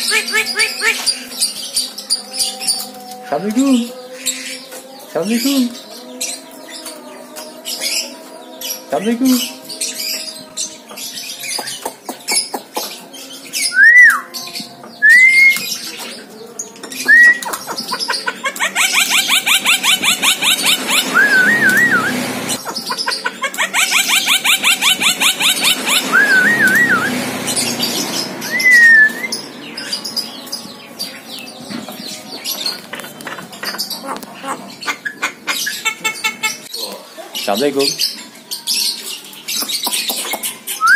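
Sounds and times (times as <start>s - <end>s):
bird whistling rising notes: 13.7s - 14.3s, 15.0s - 15.6s, 18.9s - 22.3s, 23.8s - 30.0s.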